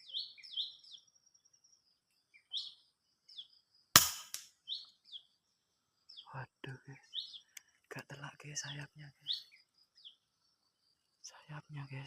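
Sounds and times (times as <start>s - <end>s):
small birds chirping: 0.0s - 3.9s, 4.5s - 12.0s
sharp rifle shot: 4.0s - 4.5s.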